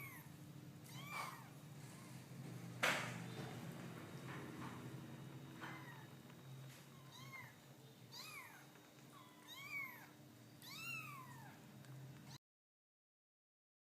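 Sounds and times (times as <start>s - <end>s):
cat meowing: 0.0s - 1.6s, 5.6s - 6.2s, 6.9s - 11.6s
faint low hum: 0.0s - 12.4s.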